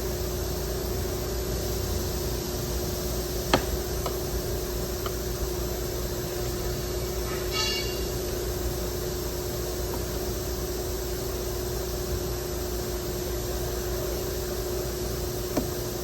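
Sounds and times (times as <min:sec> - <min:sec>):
constant low hum: 0:00.0 - 0:16.0
high-pitched squeak: 0:07.3 - 0:08.1.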